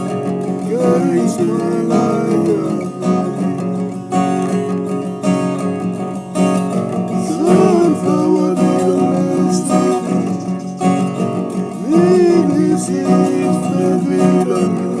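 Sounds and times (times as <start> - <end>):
person singing: 0.0 - 3.8, 7.1 - 15.0
strummed acoustic guitar: 0.0 - 15.0.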